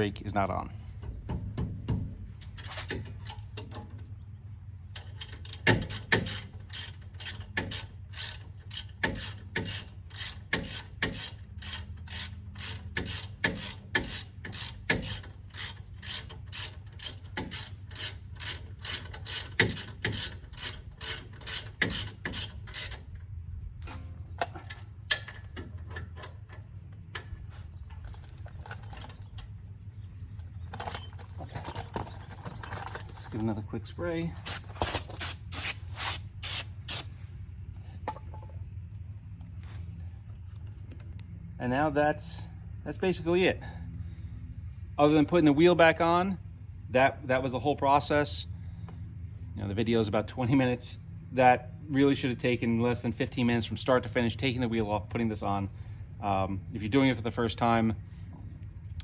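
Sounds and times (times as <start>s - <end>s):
ratchet wrench clicking: 5.1s - 23.0s, 34.4s - 37.1s.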